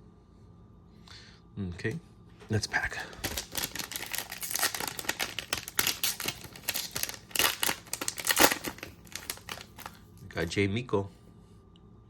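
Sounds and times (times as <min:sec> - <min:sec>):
plastic wrapper tearing and crinkling: 0:02.8 - 0:10.0.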